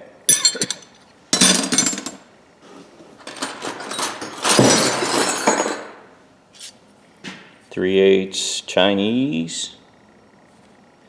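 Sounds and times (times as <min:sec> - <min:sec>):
metal wrenches clanking in a box: 0:00.3 - 0:02.2, 0:03.2 - 0:06.0.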